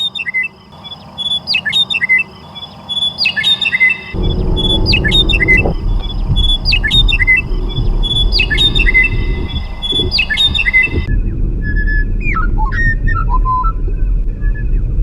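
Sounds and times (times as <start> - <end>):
loud low rushing noise: 4.2 - 11.6
songbird whistling a phrase: 8.0 - 11.1.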